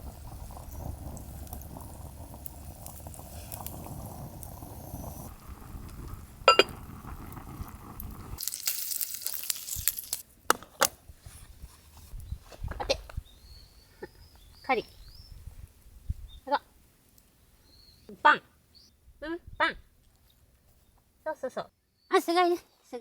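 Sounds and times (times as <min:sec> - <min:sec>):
hissing: 0:00.0 - 0:10.2
pot simmering with bubbling: 0:00.0 - 0:10.3.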